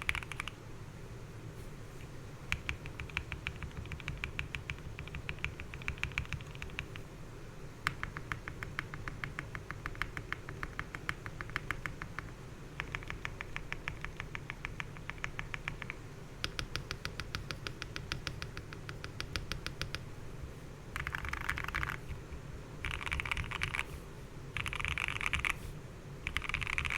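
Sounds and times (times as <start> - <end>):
keyboard typing: 0.0 - 0.6, 2.5 - 7.0, 7.8 - 20.0, 21.0 - 22.2, 22.8 - 24.0, 24.6 - 25.6, 26.2 - 26.9.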